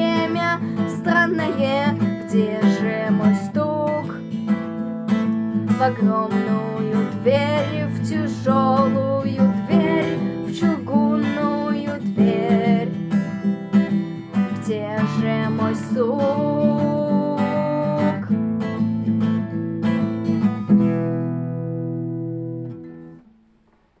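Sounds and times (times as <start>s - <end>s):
acoustic guitar strumming: 0.0s - 23.5s
person singing long notes: 6.0s - 12.9s.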